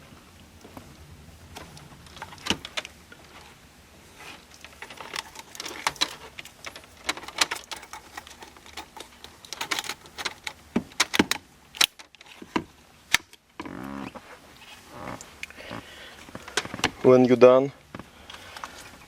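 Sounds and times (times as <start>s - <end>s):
plastic parts clicking and rattling: 4.5s - 13.4s.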